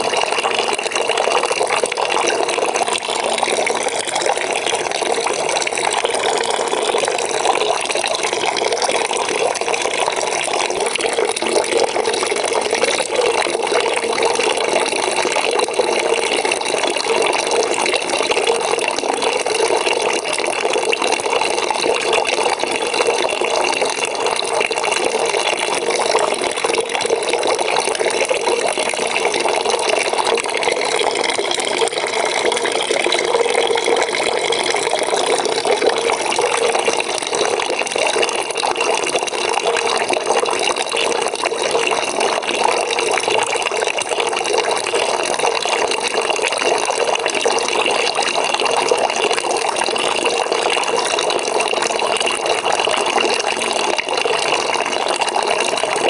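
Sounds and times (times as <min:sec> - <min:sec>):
water running into a bucket: 0:00.0 - 0:56.0.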